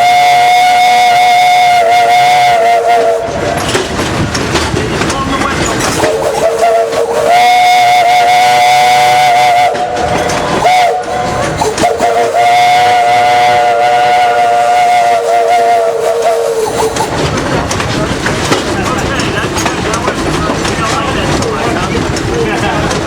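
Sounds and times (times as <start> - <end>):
steam locomotive whistle: 0.0 - 3.6, 6.0 - 17.2.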